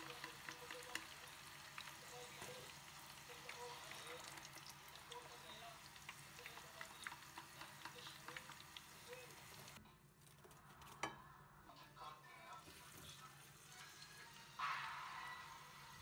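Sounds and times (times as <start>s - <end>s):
food stirred in frying pan: 0.0s - 9.8s
light sizzle: 0.0s - 9.8s, 12.3s - 16.0s.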